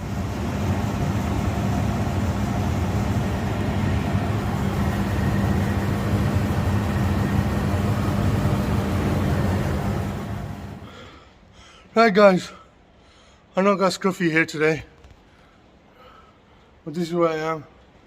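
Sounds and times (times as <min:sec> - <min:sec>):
low mechanical hum: 0:00.0 - 0:13.6.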